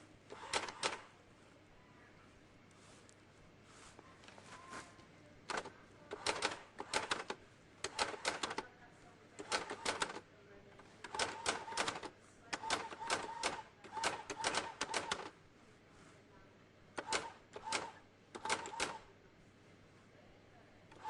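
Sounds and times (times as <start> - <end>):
electronic typewriter keystrokes: 0.3 - 1.0, 5.5 - 8.6, 9.4 - 10.2, 11.0 - 15.3, 17.0 - 19.1.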